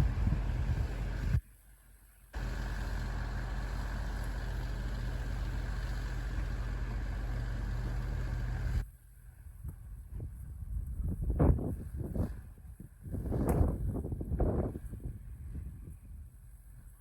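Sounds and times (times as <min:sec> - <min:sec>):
engine idling: 0:00.0 - 0:10.0.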